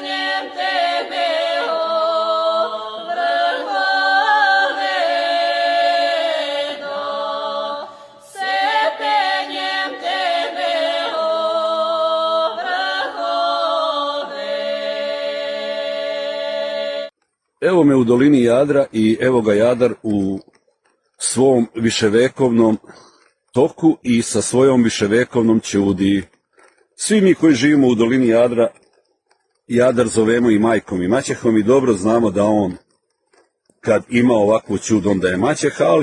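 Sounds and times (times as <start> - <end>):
chant-like vocal music: 0.0 - 17.2.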